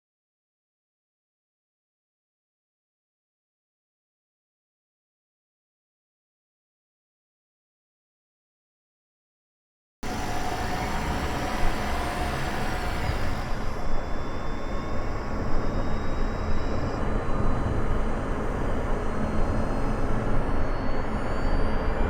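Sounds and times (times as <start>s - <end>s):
engine running low rumble: 10.0s - 22.0s
thin high whines: 10.0s - 22.0s.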